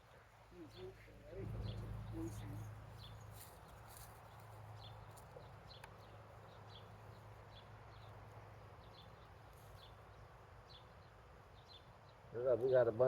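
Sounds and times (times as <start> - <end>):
low steady hum: 1.0 - 4.1.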